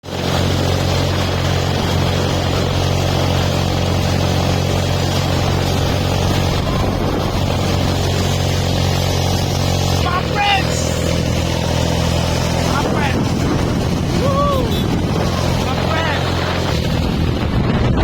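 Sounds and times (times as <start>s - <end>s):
engine droning steadily: 0.0s - 18.0s.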